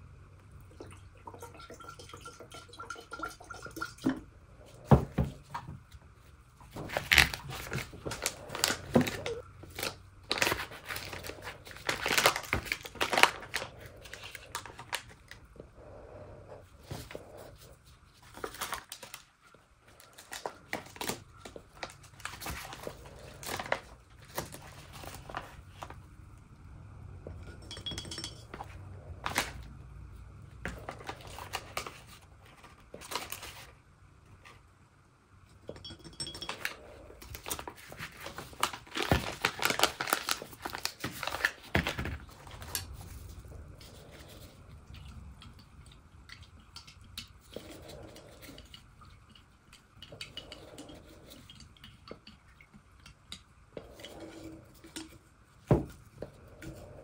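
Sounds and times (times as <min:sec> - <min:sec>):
paper rustling and crinkling: 0:06.6 - 0:15.4, 0:18.1 - 0:19.4, 0:20.0 - 0:26.0, 0:30.6 - 0:33.8, 0:37.3 - 0:45.1.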